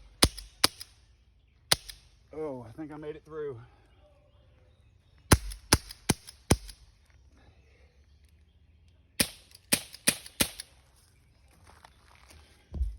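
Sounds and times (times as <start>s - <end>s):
air gun shots: 0.0s - 0.9s, 1.7s - 2.0s, 5.3s - 6.8s, 9.2s - 10.7s.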